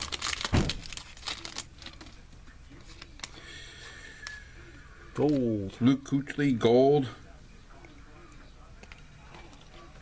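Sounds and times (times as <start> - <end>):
foil wrapper crinkling: 0.0 - 4.4.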